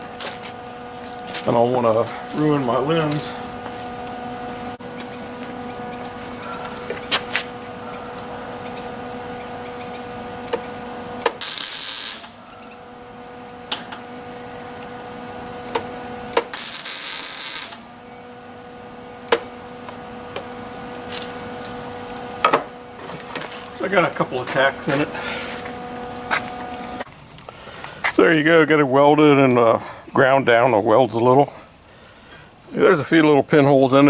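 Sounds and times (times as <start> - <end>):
electrical hum: 0.0 - 34.0
sharp clicks: 10.4 - 12.7, 15.7 - 17.9
crackling welding arc: 11.2 - 12.8, 15.7 - 18.1.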